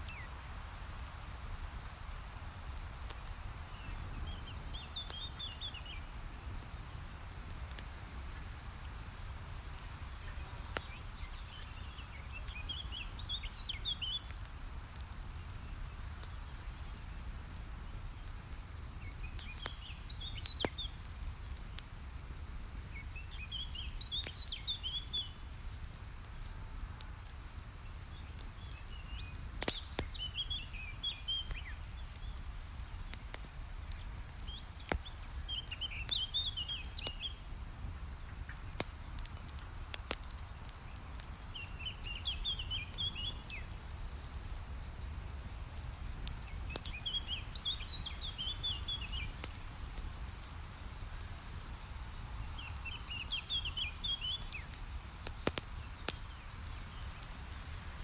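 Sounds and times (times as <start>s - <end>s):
campfire crackling: 0.0s - 58.0s
songbird chirping: 33.9s - 37.4s, 46.4s - 49.5s, 52.5s - 54.8s.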